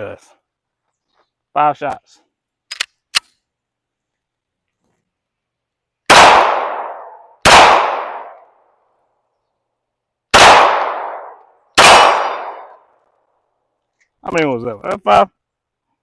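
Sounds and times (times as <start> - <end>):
pistol shots ringing: 6.1 - 8.4, 10.3 - 12.8.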